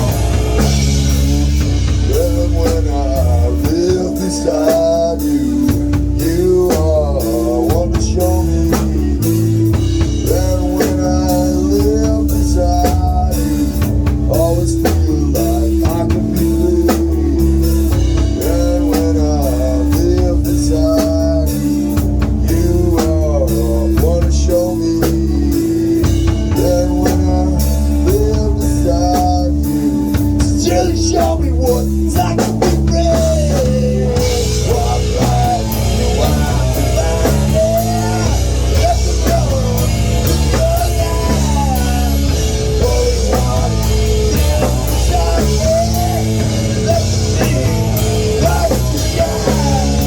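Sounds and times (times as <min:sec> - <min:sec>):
bass guitar: 0:00.0 - 0:50.0
drum kit: 0:00.0 - 0:50.0
electric guitar melody: 0:00.0 - 0:50.0.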